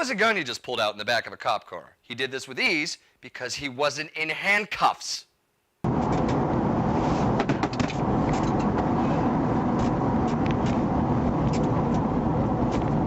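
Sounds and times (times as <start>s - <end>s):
car road and engine noise: 5.9s - 13.0s.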